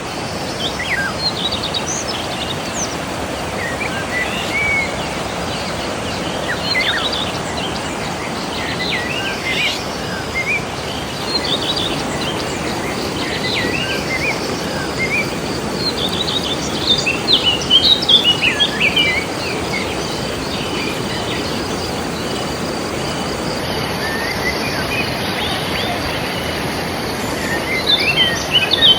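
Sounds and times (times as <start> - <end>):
birds chirping: 0.0 - 28.9
river water flowing: 0.0 - 28.9
faint insect buzz: 8.0 - 23.7.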